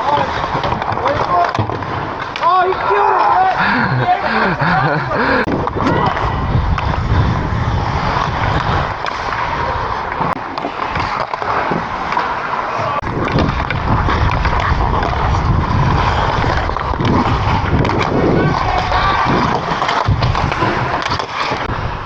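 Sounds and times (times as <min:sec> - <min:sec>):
skate blades scraping on ice: 0:00.0 - 0:22.0
wind rumbling on microphone: 0:03.6 - 0:11.1, 0:12.8 - 0:22.0.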